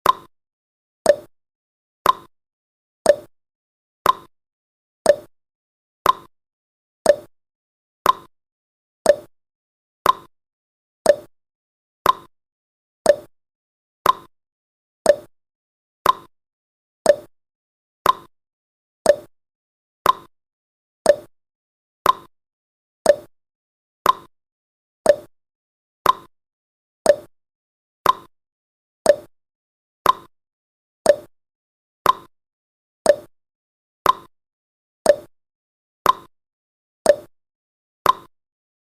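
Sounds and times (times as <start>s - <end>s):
timer ticking: 0.0s - 0.3s, 1.1s - 1.3s, 2.0s - 2.3s, 3.1s - 3.3s, 4.0s - 4.3s, 5.1s - 5.3s, 6.0s - 6.3s, 7.0s - 7.3s, 8.0s - 8.3s, 9.0s - 9.3s, 10.0s - 10.3s, 11.0s - 11.3s, 12.0s - 12.3s, 13.0s - 13.3s, 14.0s - 14.3s, 15.1s - 15.3s, 16.0s - 16.3s, 17.0s - 17.3s, 18.0s - 18.3s, 19.1s - 19.3s, 20.0s - 20.3s, 21.0s - 21.3s, 22.0s - 22.3s, 23.0s - 23.3s, 24.0s - 24.3s, 25.0s - 25.3s, 26.0s - 26.3s, 27.1s - 27.3s, 28.0s - 28.3s, 29.1s - 29.3s, 30.0s - 30.3s, 31.1s - 31.3s, 32.1s - 32.3s, 33.1s - 33.3s, 34.1s - 34.3s, 35.1s - 35.3s, 36.1s - 36.3s, 37.1s - 37.3s, 38.1s - 38.3s.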